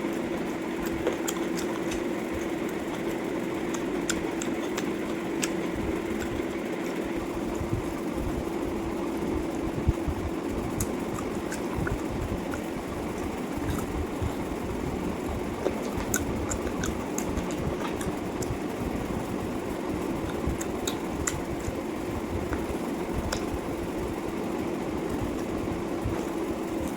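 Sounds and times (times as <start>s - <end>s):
chewing clicks: 0.0s - 7.0s, 10.5s - 14.5s, 15.2s - 18.6s, 20.0s - 21.8s, 22.4s - 23.6s
low mechanical hum: 0.0s - 26.9s.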